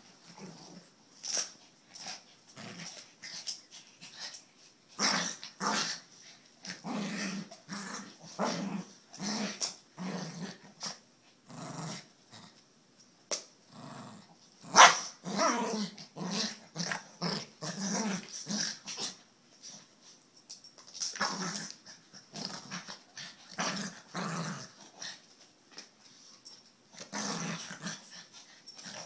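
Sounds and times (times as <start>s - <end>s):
dogs play-growling: 0.2s - 12.6s, 13.7s - 29.0s
dog barks: 14.8s - 15.1s.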